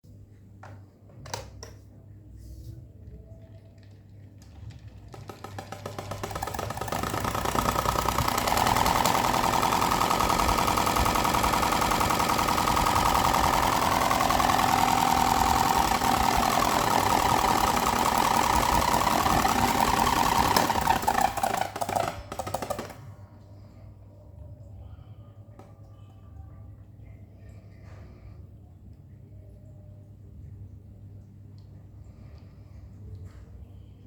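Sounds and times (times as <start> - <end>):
electric fan rattling: 4.0 - 23.4.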